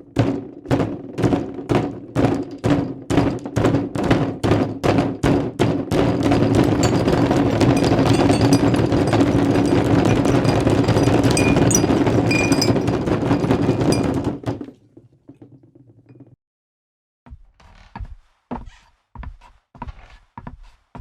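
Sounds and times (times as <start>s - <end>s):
footsteps on wooden floor: 17.3s - 21.0s.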